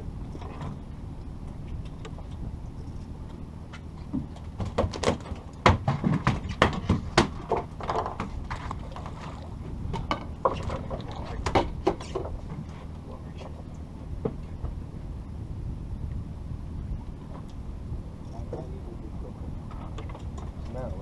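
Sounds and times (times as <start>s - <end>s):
boat engine low hum: 0.0s - 21.0s
knocks and clatter on deck: 4.1s - 9.1s, 9.9s - 12.7s.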